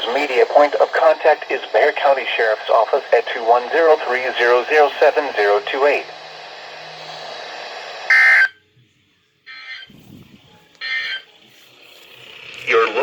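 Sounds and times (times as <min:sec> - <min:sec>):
radio static hiss: 0:00.0 - 0:08.5, 0:09.5 - 0:13.0
digital data tones: 0:08.1 - 0:08.6, 0:09.5 - 0:11.4.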